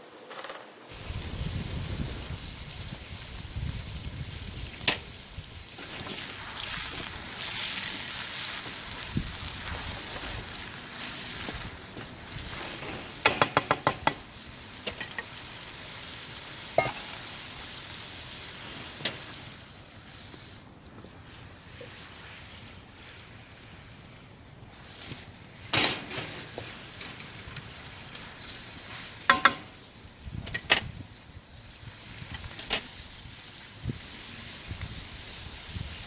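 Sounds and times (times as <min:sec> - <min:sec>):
food sizzling in hot oil: 0:00.8 - 0:20.5, 0:26.2 - 0:30.4, 0:31.0 - 0:36.0
utensil tapping on pan: 0:13.3 - 0:14.2.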